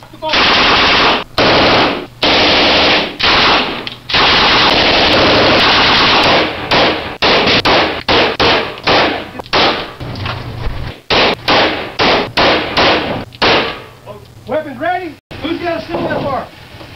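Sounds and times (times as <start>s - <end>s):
submachine gun firing automatic: 0.3s - 9.9s.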